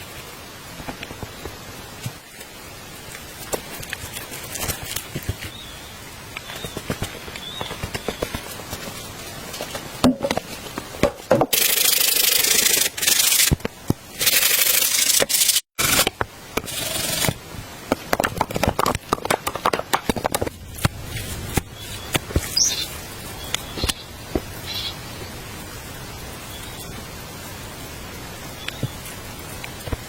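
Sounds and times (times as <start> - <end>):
rapid clicks and crackles: 0.7 - 5.6, 11.5 - 22.5.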